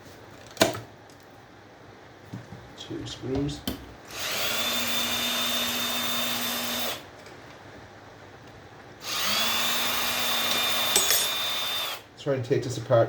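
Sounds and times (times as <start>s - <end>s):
power drill whirring: 4.1s - 7.1s, 9.0s - 12.0s.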